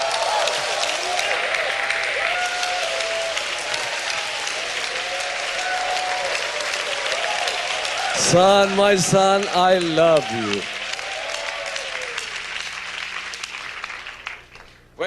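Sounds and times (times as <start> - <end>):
crowd applauding: 0.0 - 14.8
voices calling out: 8.1 - 10.7.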